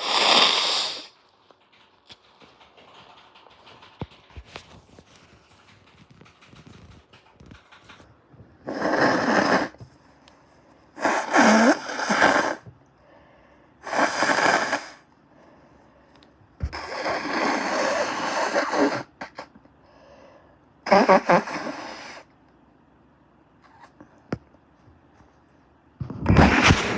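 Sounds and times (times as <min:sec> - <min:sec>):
person blowing nose: 0:00.0 - 0:01.2, 0:08.6 - 0:09.8, 0:11.0 - 0:12.6, 0:13.8 - 0:15.0, 0:16.6 - 0:19.5, 0:20.9 - 0:22.3, 0:26.3 - 0:26.9.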